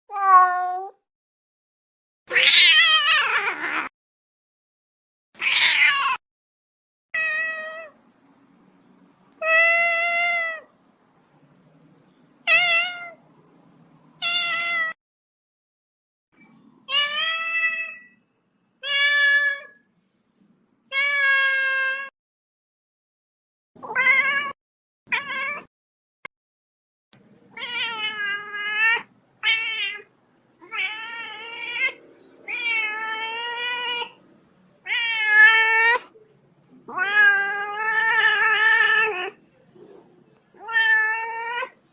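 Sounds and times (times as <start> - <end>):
cat meowing: 0.1 - 1.0, 2.3 - 3.9, 5.4 - 6.2, 7.2 - 8.0, 9.4 - 10.7, 12.4 - 13.2, 14.2 - 15.0, 16.9 - 18.2, 20.9 - 22.1, 23.8 - 25.7, 27.5 - 34.2, 34.8 - 36.2, 36.8 - 39.4, 40.5 - 41.8.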